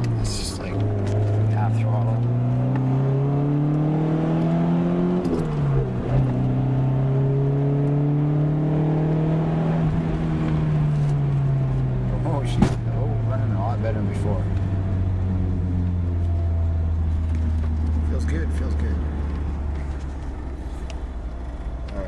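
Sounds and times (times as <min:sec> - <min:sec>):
car engine accelerating: 0:00.0 - 0:22.0.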